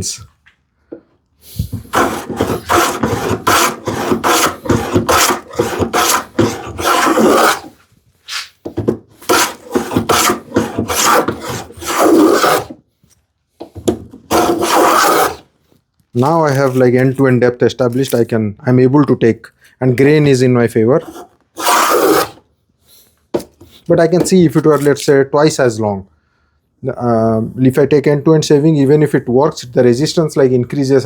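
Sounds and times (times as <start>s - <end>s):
hand plane rasping through wood: 1.8s - 7.7s, 9.2s - 12.8s, 14.3s - 15.4s, 21.0s - 22.4s.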